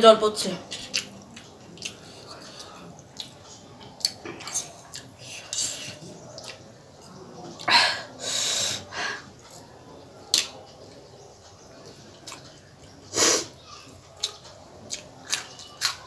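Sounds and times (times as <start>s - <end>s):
person breathing noisily: 7.7s - 9.3s
air hissing through mouth: 13.1s - 13.6s.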